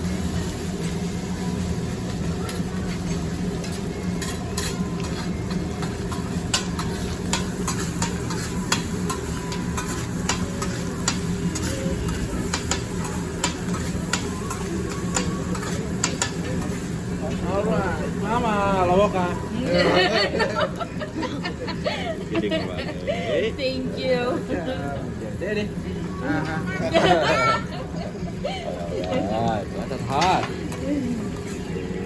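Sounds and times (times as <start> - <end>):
food sizzling on a griddle: 0.0 - 32.0
metal spatulas scraping: 3.6 - 12.8.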